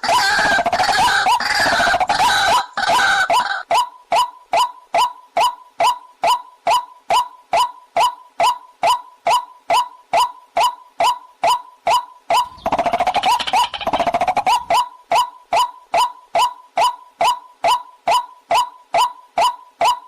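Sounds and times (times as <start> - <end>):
bird fast rattling call: 12.4 - 14.8.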